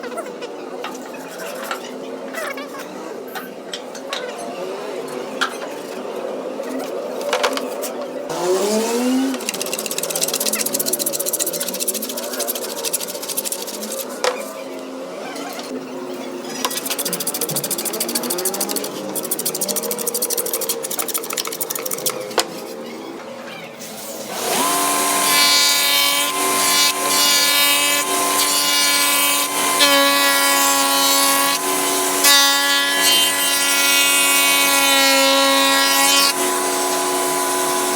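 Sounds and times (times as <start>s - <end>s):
fast scraping ticks on wood: 9.4s - 14.1s, 16.7s - 22.2s
power tool motor whining: 24.3s - 34.3s, 35.1s - 37.9s.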